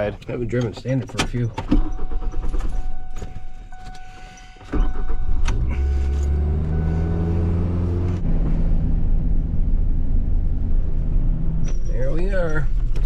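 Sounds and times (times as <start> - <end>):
pickup engine starting and idling: 0.0 - 8.4.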